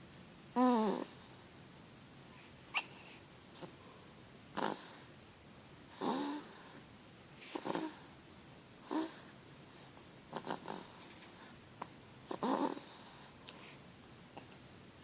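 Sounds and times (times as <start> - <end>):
baby snoring: 0.6 - 1.2, 4.5 - 5.1, 5.9 - 6.8, 7.5 - 8.1, 8.8 - 9.3, 10.3 - 11.0, 12.3 - 13.3.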